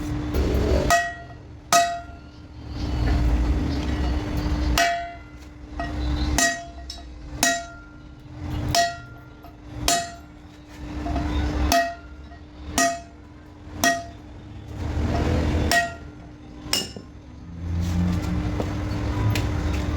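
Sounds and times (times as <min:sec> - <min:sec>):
hammer striking metal: 0:00.4 - 0:02.3, 0:04.0 - 0:10.4, 0:11.0 - 0:14.3, 0:15.0 - 0:17.1.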